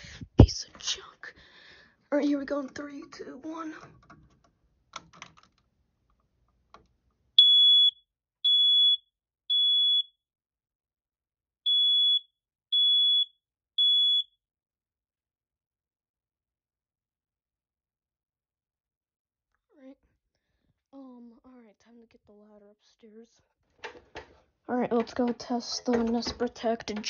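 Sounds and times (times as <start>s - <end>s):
smoke alarm high-pitched beeps: 7.4s - 10.2s, 11.7s - 14.4s.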